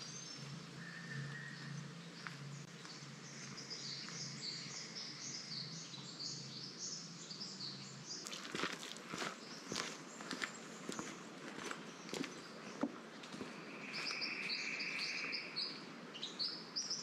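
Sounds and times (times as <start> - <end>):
birds chirping: 0.0 - 17.0
footsteps: 8.2 - 15.1.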